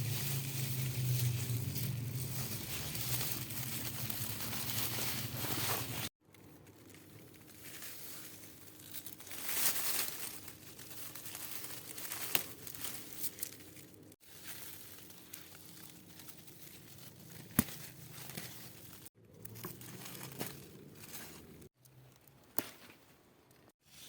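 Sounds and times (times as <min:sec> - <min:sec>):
leaves and stems rustling: 0:00.0 - 0:24.0
stems snapping: 0:08.9 - 0:13.6, 0:14.5 - 0:18.6, 0:19.3 - 0:23.6.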